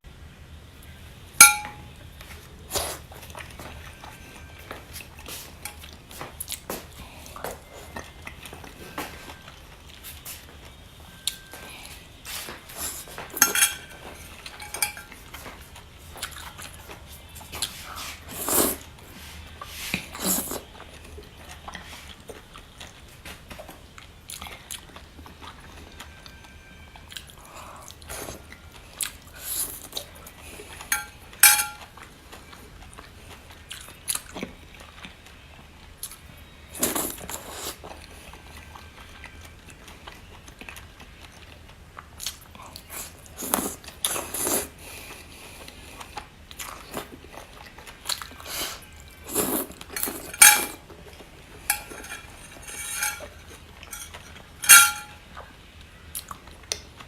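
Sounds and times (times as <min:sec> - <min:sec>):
utensils clicking against dishes: 0:13.4 - 0:15.2, 0:30.9 - 0:31.8, 0:49.4 - 0:50.8, 0:51.7 - 0:55.2
person chewing: 0:45.6 - 0:54.4.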